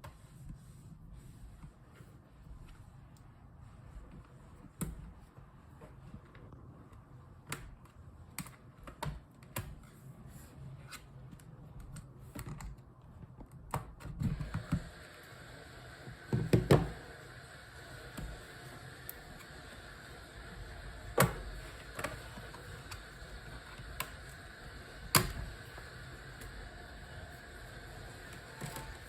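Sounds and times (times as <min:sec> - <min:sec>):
steady hiss: 0:14.4 - 0:29.0.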